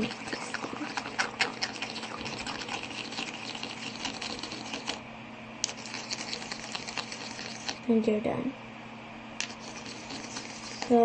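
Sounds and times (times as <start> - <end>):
slime being stirred: 0.0 - 5.0, 5.6 - 7.9, 9.4 - 11.0.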